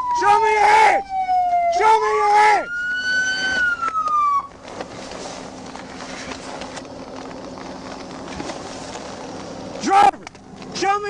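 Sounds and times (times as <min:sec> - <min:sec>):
police siren wail: 0:00.0 - 0:04.6.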